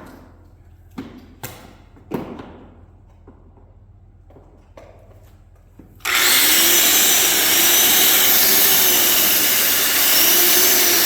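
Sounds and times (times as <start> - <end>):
angle grinder motor whine: 6.0 - 11.0.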